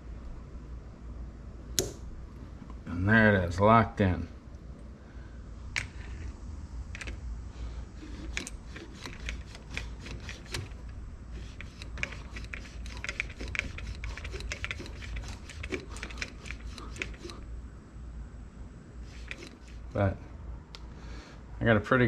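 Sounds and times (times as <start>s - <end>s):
rapid small clicks and ticks: 8.1s - 17.4s.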